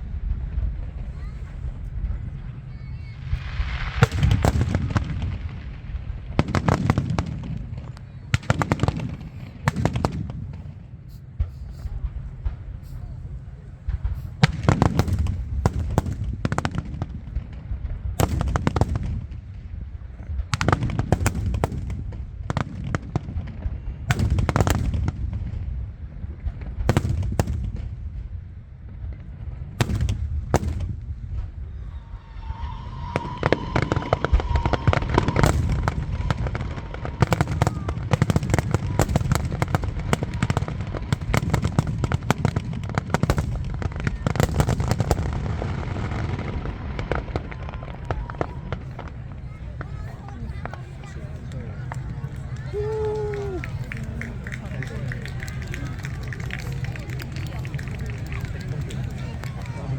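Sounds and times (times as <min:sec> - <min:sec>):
fireworks crackling barrage: 0:00.0 - 0:59.9
fireworks shells bursting: 0:03.2 - 0:05.2.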